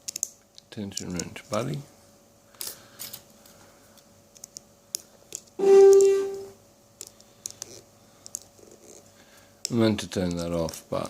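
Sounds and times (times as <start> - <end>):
electronic notification tone: 5.6 - 6.6.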